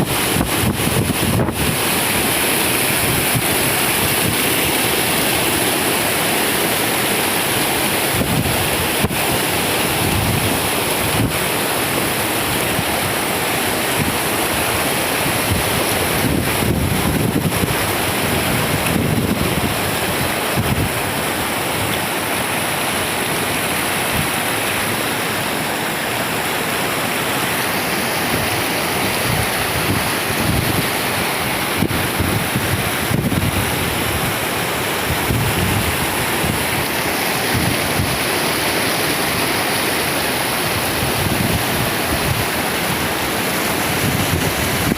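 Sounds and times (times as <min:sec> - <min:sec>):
wind buffeting microphone: 0:00.0 - 0:01.9, 0:15.4 - 0:21.2, 0:28.3 - 0:38.2, 0:40.8 - 0:42.6, 0:43.8 - 0:44.9
rushing floodwater: 0:00.0 - 0:44.9.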